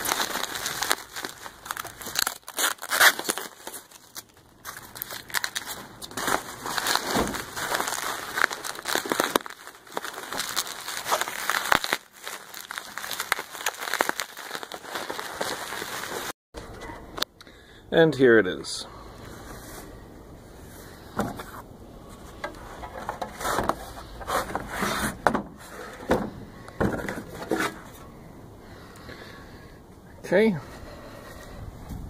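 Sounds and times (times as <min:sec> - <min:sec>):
packaging crinkling and tearing: 0:00.0 - 0:16.4.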